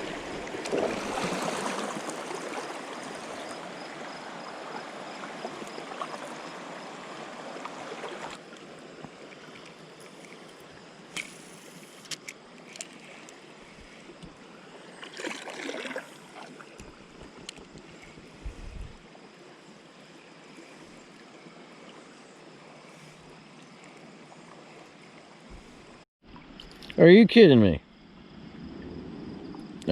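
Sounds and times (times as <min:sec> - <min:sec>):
water splash: 0:00.0 - 0:03.5, 0:15.0 - 0:16.6
water around a kayak: 0:00.0 - 0:26.9, 0:27.8 - 0:29.9.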